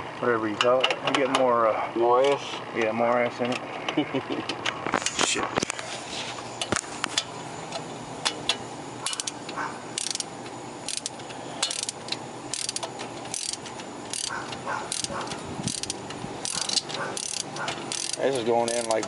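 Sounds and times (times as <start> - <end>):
socket ratchet clicking: 8.3 - 9.4, 10.0 - 10.3, 10.9 - 19.0.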